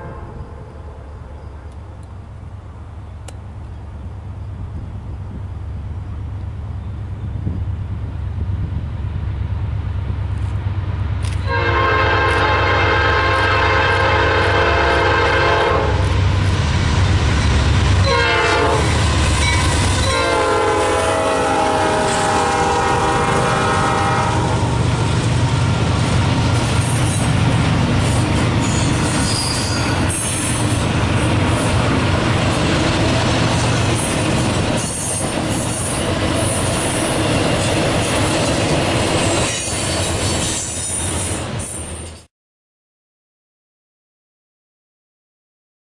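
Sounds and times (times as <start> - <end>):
locomotive air horn chord: 0.0 - 1.6, 11.5 - 16.0, 18.0 - 24.8
locomotive engine rumbling: 0.0 - 42.2
train cars clattering: 13.2 - 42.3
train wheel squeal: 19.3 - 20.2, 28.0 - 30.9, 33.6 - 42.3.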